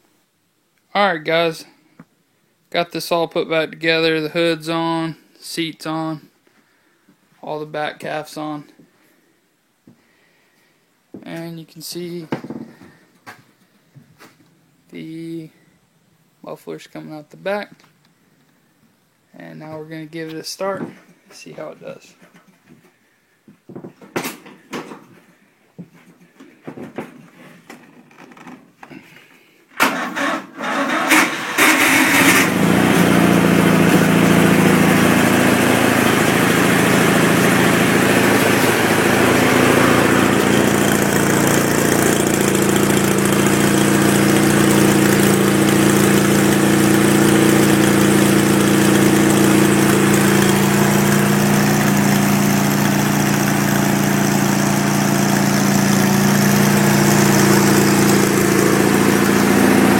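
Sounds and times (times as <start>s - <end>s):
engine cranking and running: 29.8s - 59.9s.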